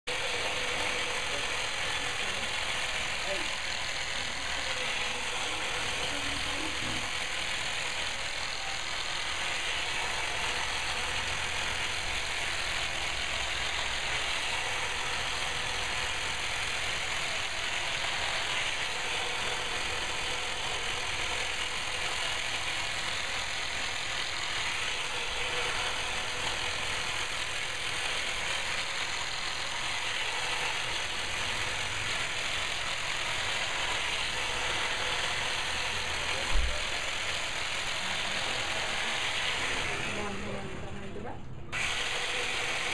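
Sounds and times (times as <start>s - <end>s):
small motorised device running: 0.1s - 42.9s.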